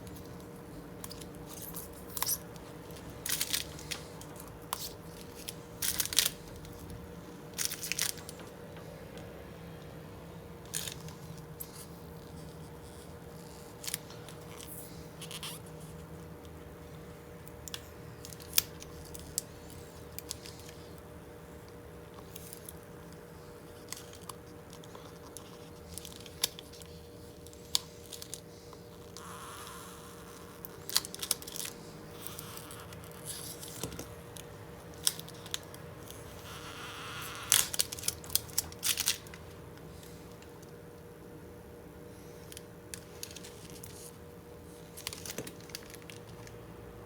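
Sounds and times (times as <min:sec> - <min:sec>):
film scraping and peeling: 0:00.0 - 0:08.5, 0:22.2 - 0:40.2
faint steady hum: 0:00.0 - 0:47.0.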